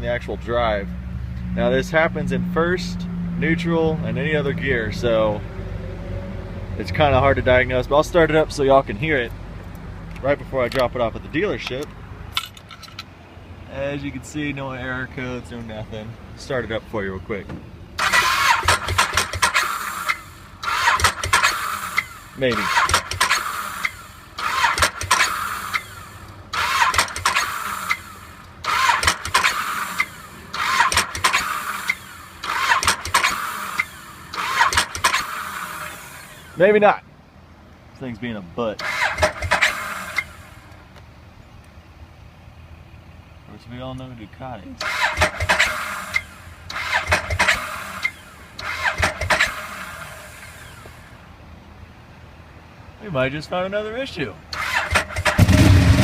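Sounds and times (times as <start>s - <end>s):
motorcycle electric starter cranking: 18.0s - 36.7s, 38.8s - 40.7s, 44.8s - 51.1s, 54.5s - 56.0s.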